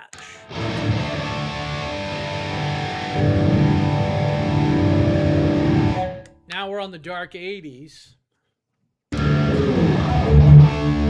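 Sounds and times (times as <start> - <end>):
electric guitar chords ringing: 0.5 - 6.2, 9.2 - 11.0.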